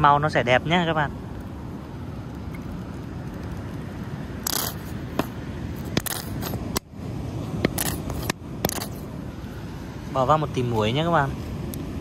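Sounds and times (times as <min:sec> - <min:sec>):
utensil scrapes: 0:04.5 - 0:05.0, 0:05.8 - 0:06.6.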